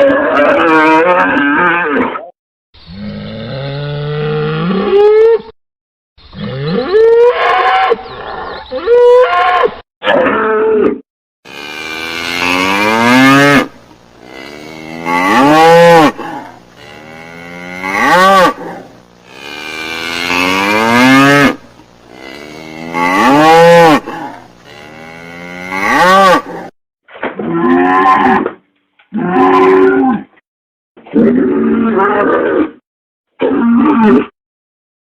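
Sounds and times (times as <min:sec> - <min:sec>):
cow mooing: 0:11.5 - 0:26.7, 0:29.1 - 0:30.3.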